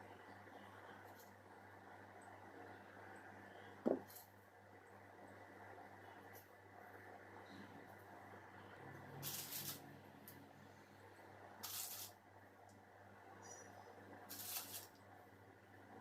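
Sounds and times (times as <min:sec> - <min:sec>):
faint low hum: 0:00.0 - 0:16.0
soft grainy powder rustles: 0:09.2 - 0:10.0, 0:11.6 - 0:12.2, 0:14.3 - 0:15.0.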